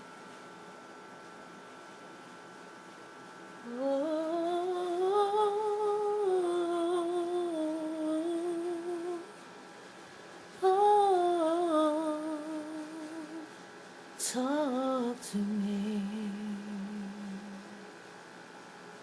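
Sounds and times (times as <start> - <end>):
woman humming with vibrato: 3.6 - 9.3.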